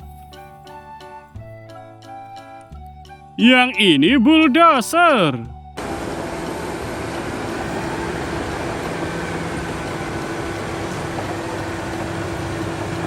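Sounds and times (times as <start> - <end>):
bulldozer engine running: 5.8 - 13.0.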